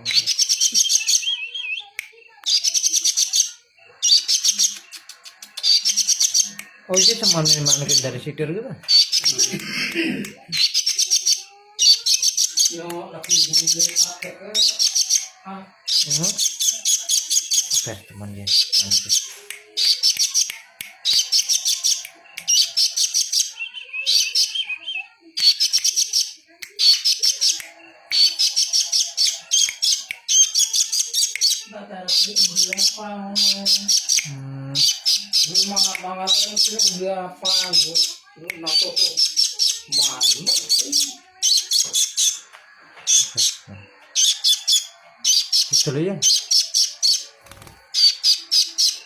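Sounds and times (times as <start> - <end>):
whistled bird trill: 0.0 - 4.8, 19.8 - 42.5
songbird chirping: 0.0 - 49.0.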